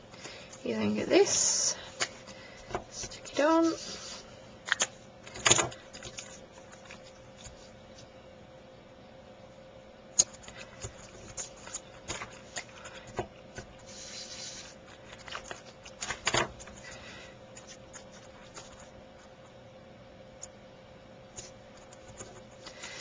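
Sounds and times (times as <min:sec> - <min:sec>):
faint steady hum: 0:00.0 - 0:23.0
paper rustling: 0:02.0 - 0:08.1, 0:10.2 - 0:19.4.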